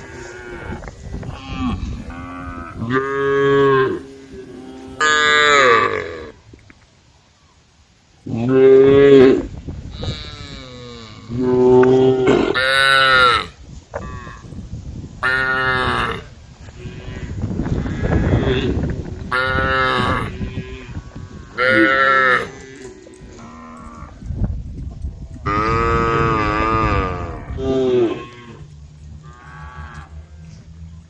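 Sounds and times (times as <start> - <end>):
cows mooing: 0.0 - 6.4, 15.2 - 24.2, 25.4 - 31.0.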